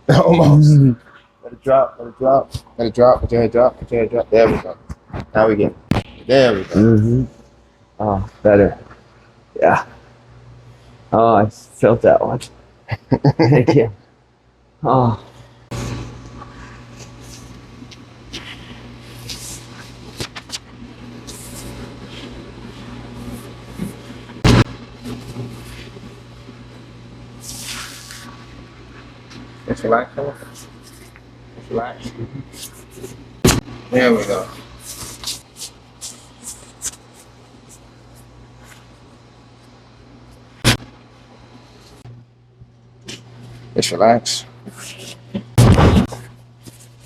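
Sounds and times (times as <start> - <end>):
steady low hum: 0.0 - 47.0
loud short thump: 24.5 - 24.7, 45.6 - 46.2.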